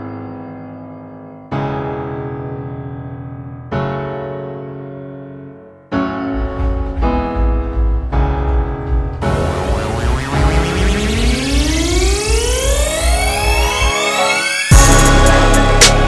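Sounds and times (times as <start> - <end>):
heavy bass: 6.5 - 16.0
electric piano chords: 7.5 - 16.0.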